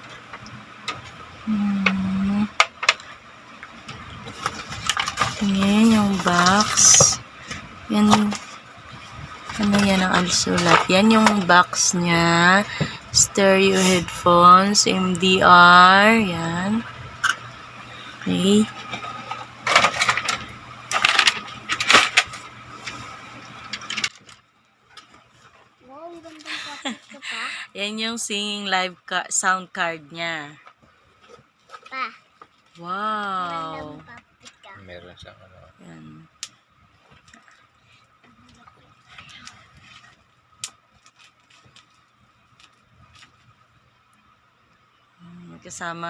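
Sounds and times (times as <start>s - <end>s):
faint steady hum: 0.0s - 46.0s
packaging rustling and scraping: 4.2s - 7.2s.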